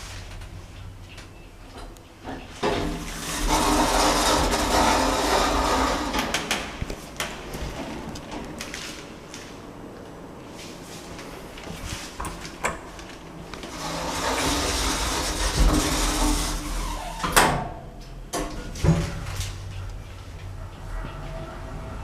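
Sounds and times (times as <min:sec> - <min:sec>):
lift doors sliding: 0:02.4 - 0:08.9, 0:13.6 - 0:17.7.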